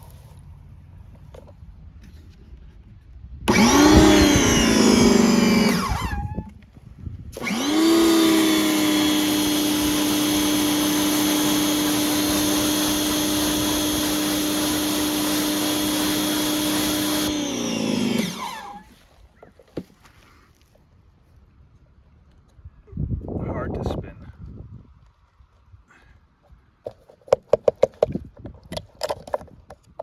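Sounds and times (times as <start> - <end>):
pressure washer motor whine: 3.5 - 6.6, 7.3 - 19.0.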